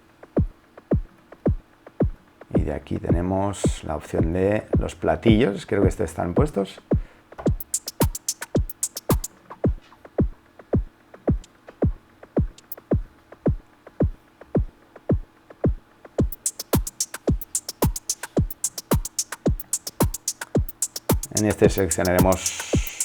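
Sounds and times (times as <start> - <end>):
electronic kick drum: 0.0 - 23.0
hi-hat ticks: 5.8 - 23.0.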